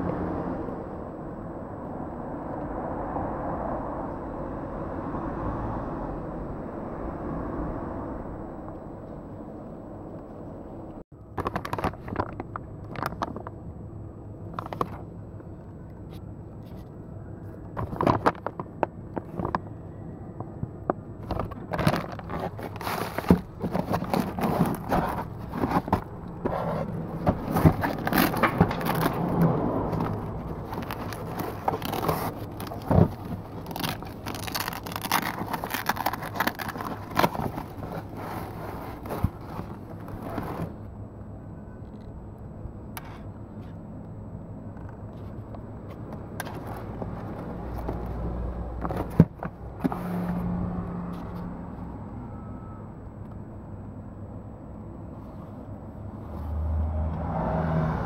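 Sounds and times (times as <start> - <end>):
low steady hum: 6.0 - 57.2
objects being handled: 11.3 - 13.6, 14.5 - 15.1, 16.1 - 19.7, 20.4 - 40.9, 44.8 - 50.5.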